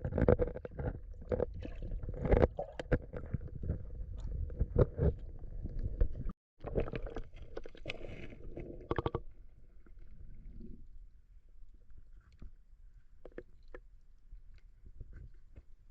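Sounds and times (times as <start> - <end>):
water splashing and sloshing: 0.1 - 9.2.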